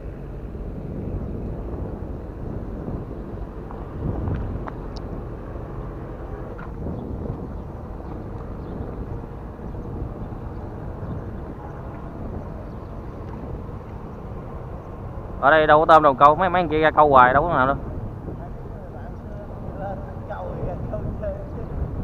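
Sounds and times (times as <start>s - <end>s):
low outdoor rumble: 0.0s - 22.0s.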